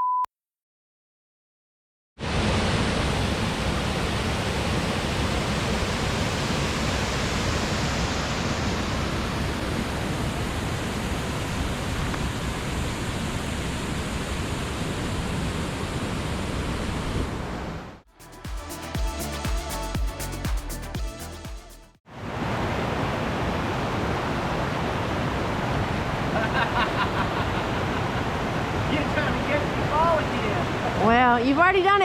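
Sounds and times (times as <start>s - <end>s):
waterfall rushing: 27.0s - 31.1s.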